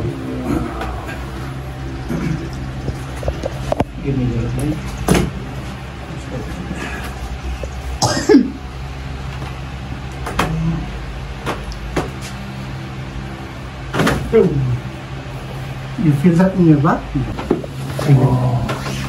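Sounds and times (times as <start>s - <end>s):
person making throaty sounds: 0.0s - 3.6s, 6.6s - 8.6s
low motor hum: 0.0s - 19.0s.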